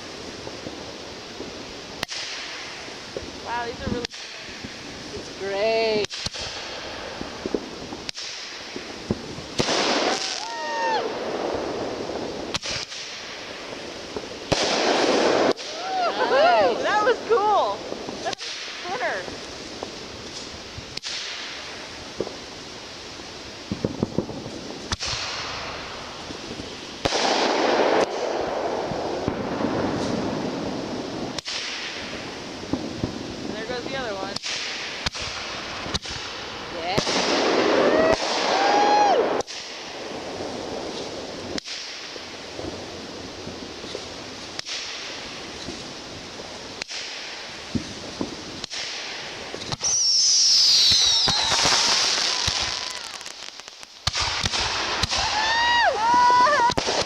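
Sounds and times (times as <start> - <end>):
fireworks bangs: 0.0 - 57.0
fireworks hissing: 0.0 - 57.0
falling firework whistle: 9.6 - 13.1, 14.5 - 17.1, 37.1 - 39.8, 48.7 - 57.0.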